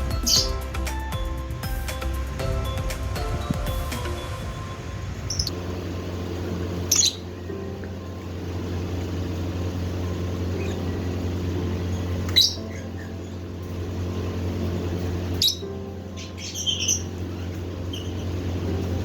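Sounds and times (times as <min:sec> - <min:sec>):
lovebirds squawking: 0:00.0 - 0:01.0, 0:06.8 - 0:07.5, 0:10.0 - 0:13.6, 0:14.8 - 0:19.0
steady low hum: 0:00.0 - 0:19.0.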